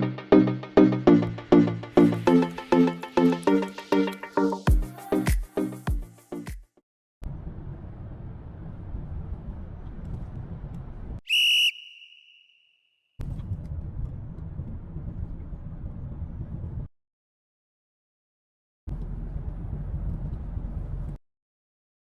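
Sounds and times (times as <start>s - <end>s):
high whistle-like tone: 11.3s - 12.8s.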